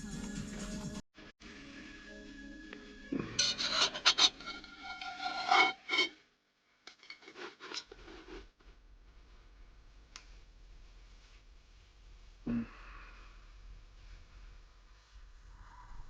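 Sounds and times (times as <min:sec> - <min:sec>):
metal utensil scraping metal pan: 0:03.2 - 0:06.2, 0:06.9 - 0:08.3
light scrapes and clicks: 0:03.4 - 0:06.1, 0:06.9 - 0:08.5.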